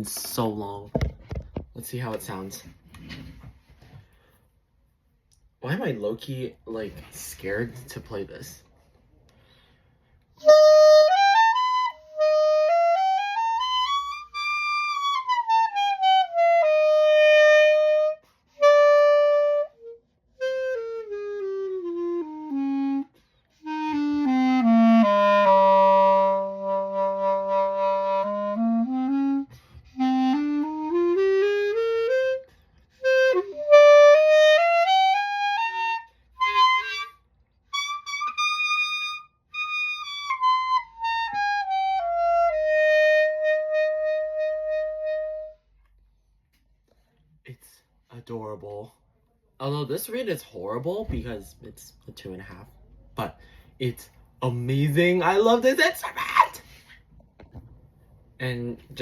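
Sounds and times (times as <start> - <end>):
solo clarinet: 10.4 - 45.7.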